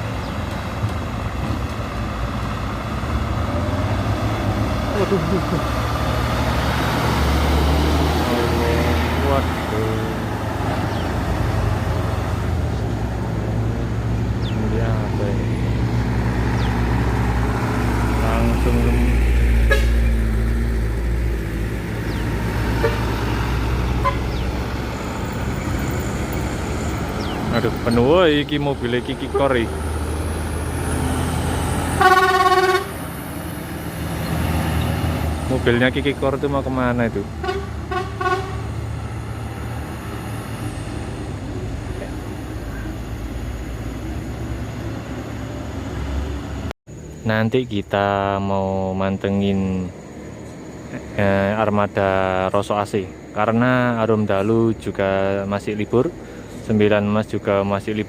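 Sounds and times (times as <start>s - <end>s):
large vehicle engine passing: 0.0s - 47.2s
tyre and road noise: 0.0s - 58.0s
short horn toots: 19.6s - 20.2s, 24.0s - 24.4s, 32.0s - 33.0s, 37.4s - 38.7s.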